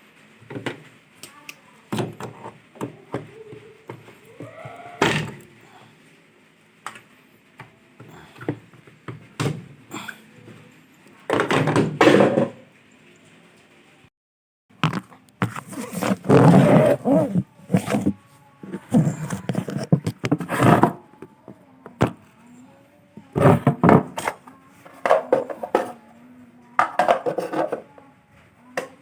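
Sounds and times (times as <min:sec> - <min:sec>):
plastic parts scraping and knocking: 0:14.8 - 0:21.1, 0:23.3 - 0:26.0, 0:26.8 - 0:27.9.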